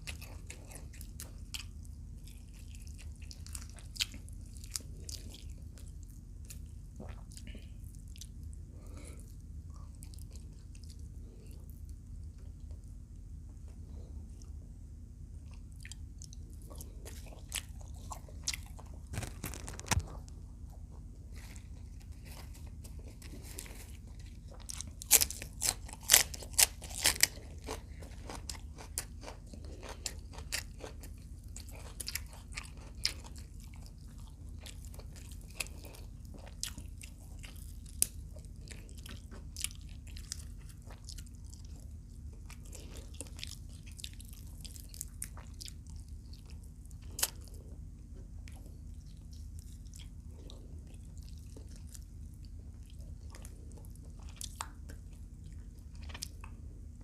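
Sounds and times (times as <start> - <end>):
chewing: 0.0 - 14.6, 15.4 - 57.0
crunching bites: 16.7 - 20.4, 22.3 - 33.6.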